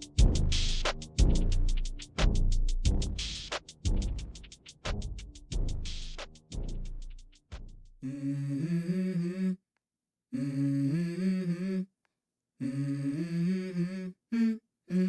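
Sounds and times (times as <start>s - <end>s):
hummed vocal music: 8.0s - 9.6s, 10.4s - 11.9s, 12.6s - 15.0s.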